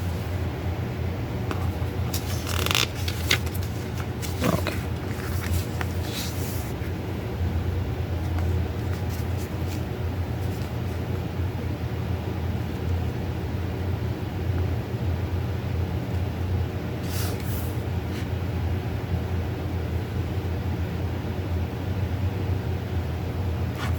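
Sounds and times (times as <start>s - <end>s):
low background hum: 0.0s - 23.9s
cd case and booklet rustling: 1.4s - 6.8s, 8.2s - 10.9s.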